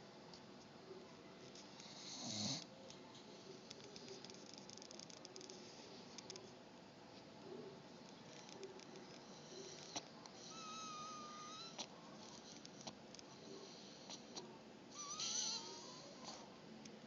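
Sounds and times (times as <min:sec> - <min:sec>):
dog snoring: 0:01.8 - 0:02.7, 0:08.2 - 0:16.5.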